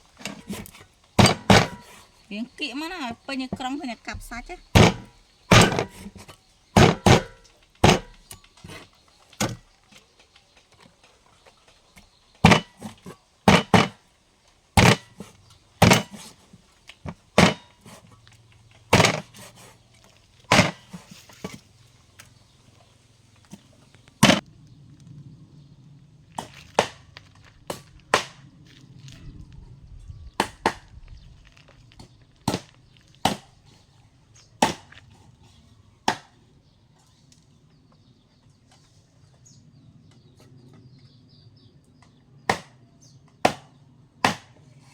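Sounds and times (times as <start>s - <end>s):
knife chopping on wooden board: 0.3s - 2.0s, 4.2s - 6.2s, 6.8s - 8.8s.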